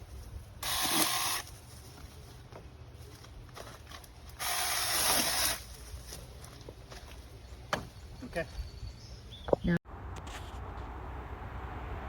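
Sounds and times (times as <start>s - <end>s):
mini chainsaw motor bursts: 0.6s - 1.5s, 4.4s - 5.6s.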